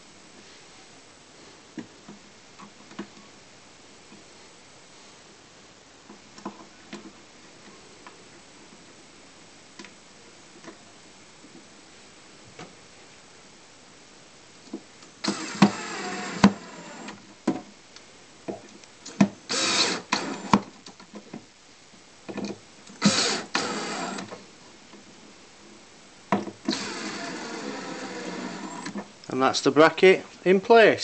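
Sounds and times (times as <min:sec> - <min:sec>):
cordless drill driving screws: 0:15.2 - 0:17.2, 0:19.5 - 0:20.6, 0:23.0 - 0:24.3, 0:26.6 - 0:29.0.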